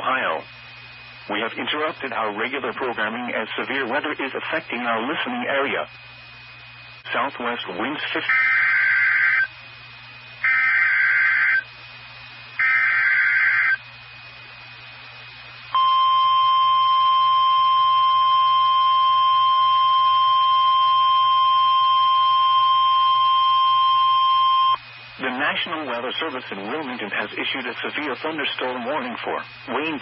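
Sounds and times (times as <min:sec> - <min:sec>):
steady warning alarm tone: 0:07.8 - 0:09.6, 0:10.4 - 0:11.7, 0:12.6 - 0:13.9, 0:15.7 - 0:24.8.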